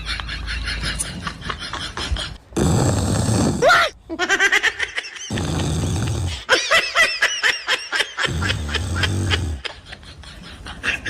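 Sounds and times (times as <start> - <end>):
man snoring with rattle: 2.6 - 3.7, 5.3 - 6.5, 8.2 - 9.7.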